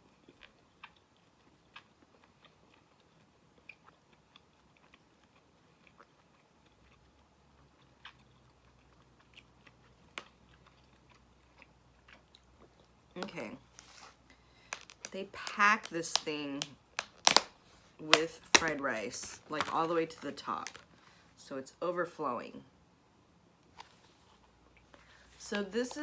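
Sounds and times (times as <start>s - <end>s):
person chewing: 0.0s - 17.5s, 18.1s - 20.9s.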